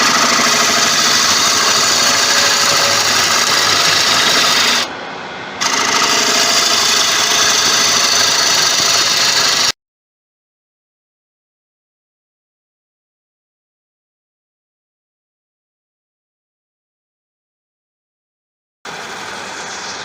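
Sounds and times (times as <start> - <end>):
gouge cutting wood on a lathe: 0.0 - 4.9, 5.6 - 9.8.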